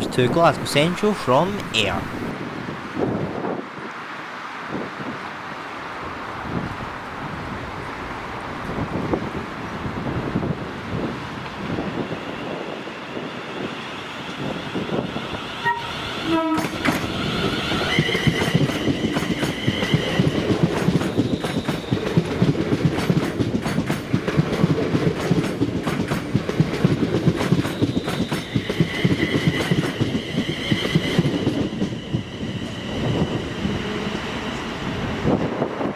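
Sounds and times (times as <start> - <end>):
train wheels clattering over rails: 16.5 - 33.4.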